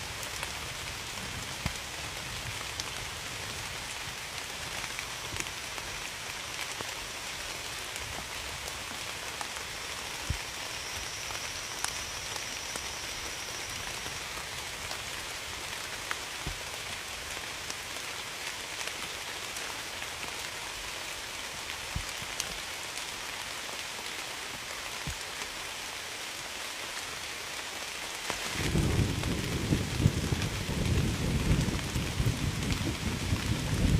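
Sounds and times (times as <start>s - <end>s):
steady rain falling: 0.0s - 33.9s
thunder rumbling: 28.5s - 33.9s.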